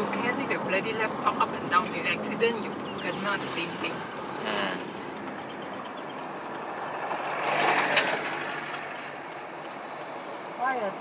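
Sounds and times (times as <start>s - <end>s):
road and engine noise inside car: 0.0s - 11.0s.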